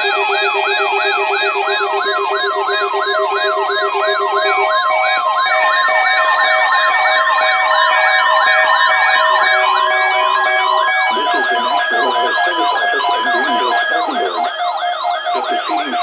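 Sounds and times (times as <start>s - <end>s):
electronic beeps: 9.1s - 16.0s.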